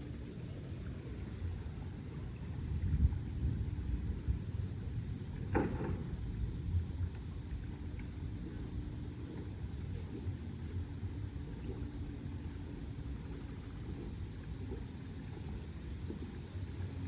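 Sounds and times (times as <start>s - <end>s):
continuous low rumble: 0.0s - 17.0s
high insect drone: 0.0s - 17.0s.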